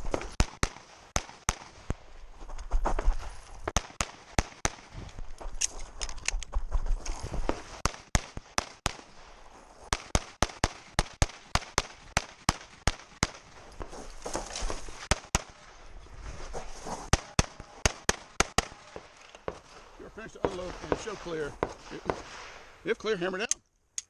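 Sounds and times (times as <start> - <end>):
rapid pistol shots: 0.2 - 1.8, 3.7 - 5.0, 7.5 - 9.2, 9.9 - 13.5, 17.1 - 19.8, 20.4 - 22.6.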